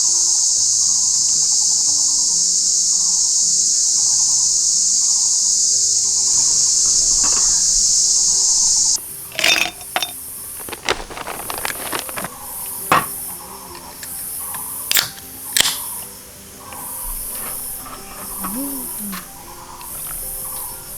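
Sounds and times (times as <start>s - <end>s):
high-pitched insect chorus: 0.0s - 20.9s
sharp clicks and cracks: 9.3s - 16.1s.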